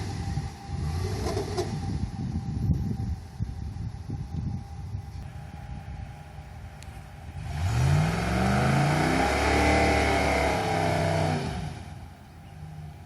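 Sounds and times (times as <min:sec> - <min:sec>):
truck engine revving: 0:00.0 - 0:02.6, 0:07.1 - 0:13.0.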